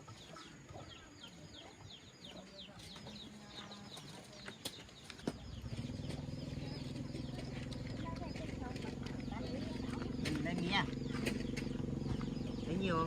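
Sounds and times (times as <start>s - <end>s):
chicks peeping: 0.0s - 13.0s
small motor humming: 5.5s - 13.0s.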